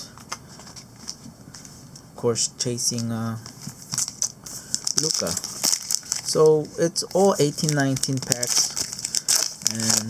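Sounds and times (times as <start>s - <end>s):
room hiss: 1.2s - 10.0s.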